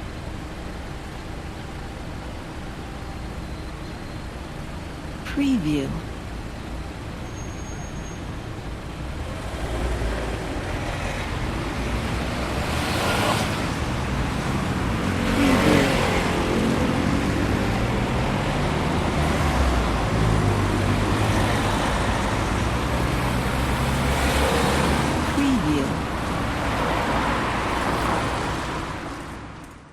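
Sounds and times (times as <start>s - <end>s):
vehicles passing close: 0.0s - 29.9s
rush of passing cars: 7.0s - 29.9s.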